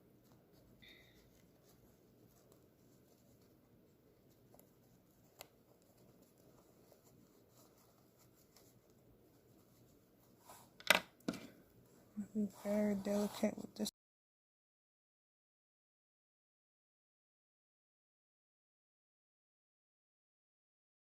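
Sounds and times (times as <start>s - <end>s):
fabric scratching and rustling: 0.2s - 10.8s, 12.4s - 13.9s.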